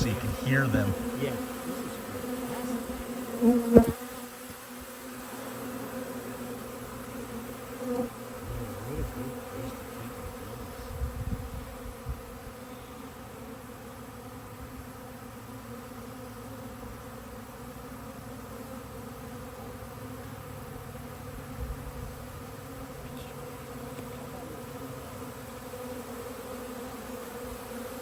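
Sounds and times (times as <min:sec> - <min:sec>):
honeybees buzzing: 0:00.0 - 0:28.0.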